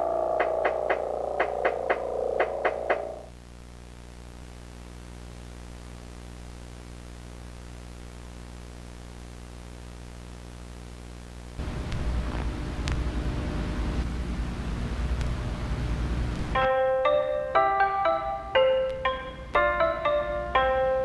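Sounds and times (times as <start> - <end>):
music with plucked notes: 0.0 - 3.2, 16.6 - 21.0
low electronic hum: 0.0 - 16.6.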